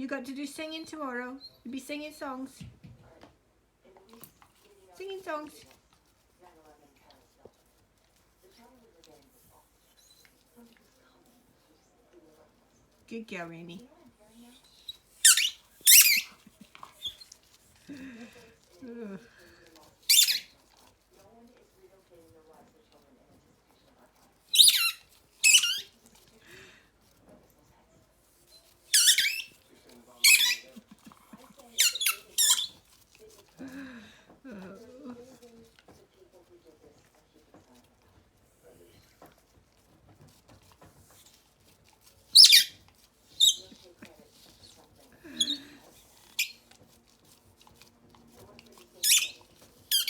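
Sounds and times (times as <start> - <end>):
dog squeaking: 14.7 - 16.4, 17.0 - 17.4, 20.1 - 20.5, 24.5 - 26.0, 28.6 - 29.6, 30.2 - 30.8, 31.8 - 32.8, 42.3 - 43.7, 45.4 - 45.6, 46.3 - 46.7, 49.0 - 50.0.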